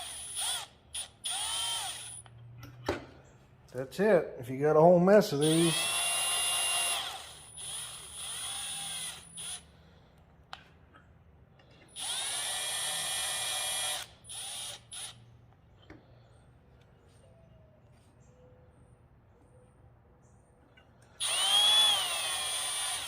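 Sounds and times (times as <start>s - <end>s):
cordless drill whine: 0.0s - 2.3s, 5.4s - 9.8s, 11.8s - 15.2s, 21.2s - 23.0s.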